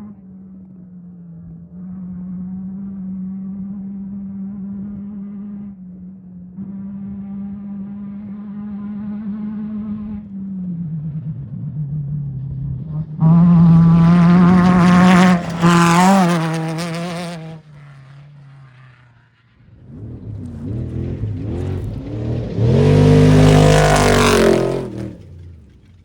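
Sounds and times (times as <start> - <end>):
race vehicle engines passing: 6.6 - 26.0.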